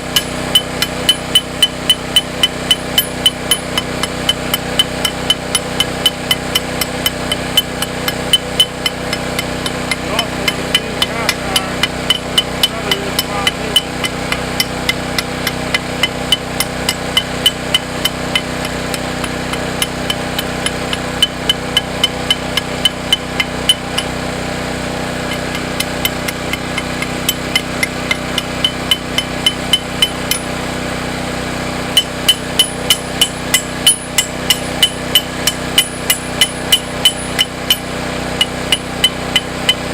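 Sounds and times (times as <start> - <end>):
hammer tapping on metal: 0.0 - 24.2, 25.3 - 30.5, 31.9 - 39.9
electrical hum: 0.0 - 30.7.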